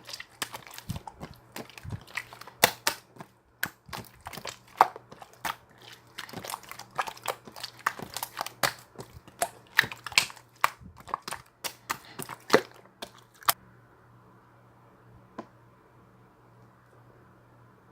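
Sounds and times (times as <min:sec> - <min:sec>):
slime crackling and popping: 0:00.0 - 0:13.6.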